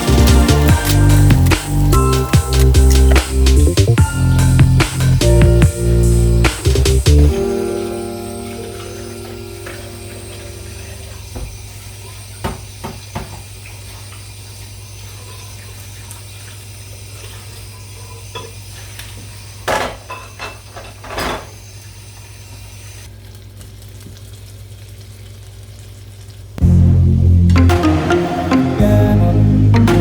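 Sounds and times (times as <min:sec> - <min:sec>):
dishes and cutlery clinking: 0:19.7 - 0:21.5
low hum: 0:26.6 - 0:30.0.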